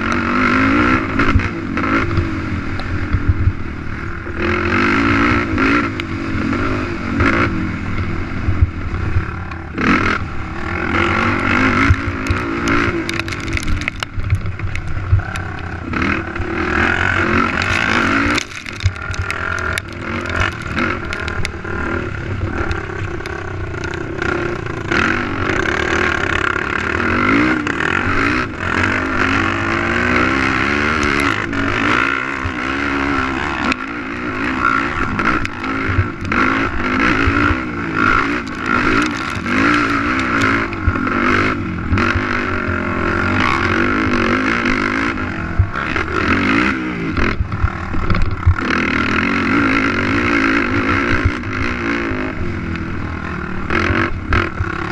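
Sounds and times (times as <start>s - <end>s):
quad engine revving: 0.0s - 54.9s
knocks and rattles: 11.8s - 15.5s, 17.3s - 21.6s, 38.1s - 41.0s.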